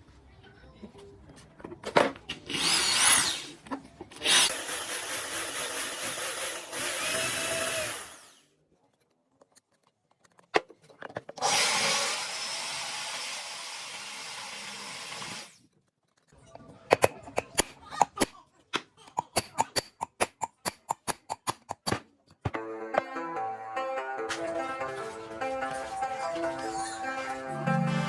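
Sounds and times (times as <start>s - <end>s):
power tool motor whine: 4.3s - 8.4s.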